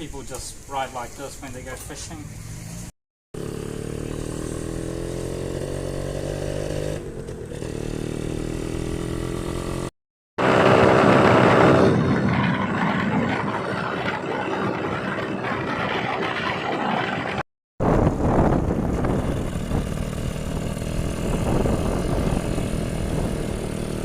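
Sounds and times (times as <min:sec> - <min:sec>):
motorcycle engine running: 0:02.6 - 0:17.1, 0:17.8 - 0:24.0
riding noise: 0:10.4 - 0:24.0.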